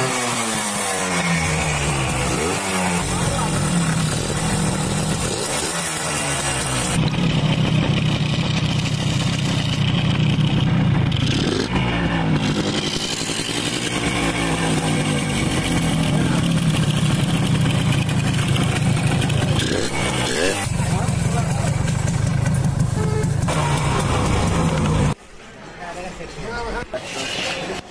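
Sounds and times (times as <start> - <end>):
motorcycle engine revving: 0.0 - 25.2.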